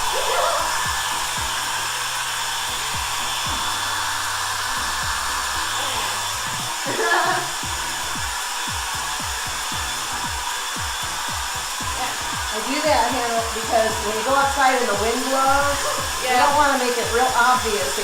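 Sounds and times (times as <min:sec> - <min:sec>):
hair dryer blowing: 0:00.0 - 0:18.0
person speaking: 0:05.6 - 0:07.6, 0:11.8 - 0:18.0.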